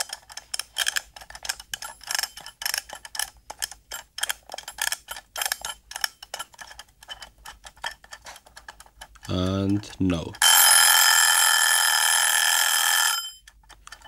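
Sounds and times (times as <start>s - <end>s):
kitchen timer ticking: 0.0s - 10.6s.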